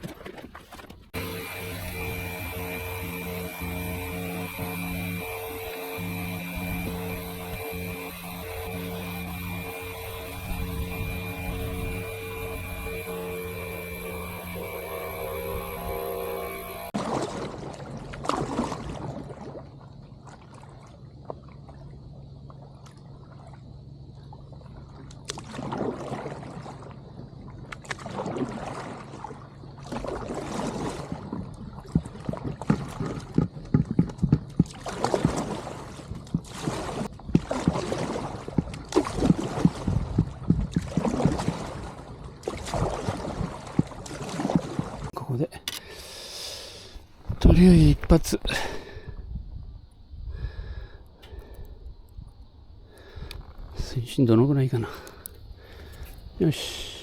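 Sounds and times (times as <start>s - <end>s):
paddle strokes in water: 0.0s - 1.2s, 16.9s - 45.2s
steady low hum: 1.1s - 17.0s.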